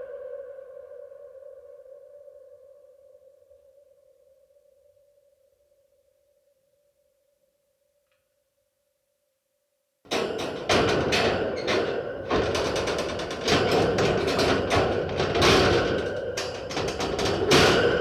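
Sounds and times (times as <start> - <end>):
metal cage door clanking: 10.1 - 18.0
steady grinding noise: 10.4 - 18.0.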